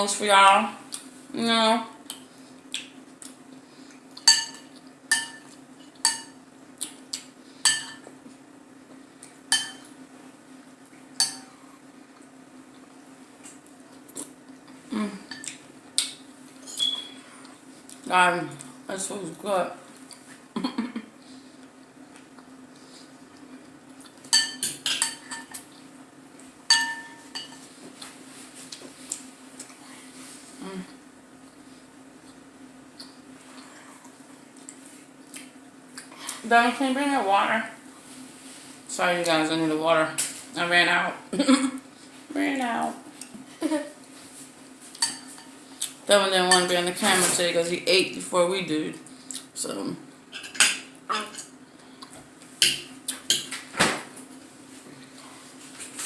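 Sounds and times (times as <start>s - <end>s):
cutlery clinking against dishes: 4.2s - 6.4s, 9.5s - 9.9s, 26.7s - 27.6s
cutlery clinking on dishes: 26.7s - 27.6s.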